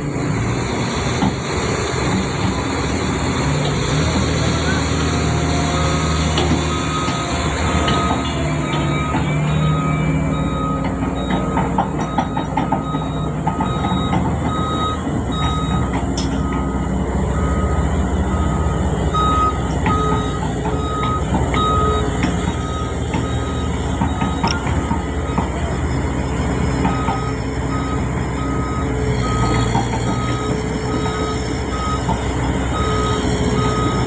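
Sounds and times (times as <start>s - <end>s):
diesel engine running: 0.0s - 34.0s
backup alarm beeping: 4.6s - 25.6s.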